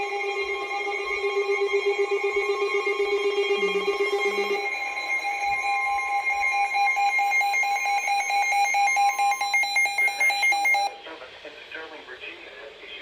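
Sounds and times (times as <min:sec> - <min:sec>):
rapidly pulsing tone: 0:00.0 - 0:11.5
rapid electronic alarm beeping: 0:04.1 - 0:11.0.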